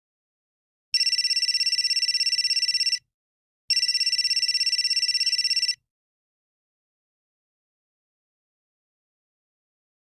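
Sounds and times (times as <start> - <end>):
phone ringtone trilling: 1.0 - 3.0, 3.7 - 5.8.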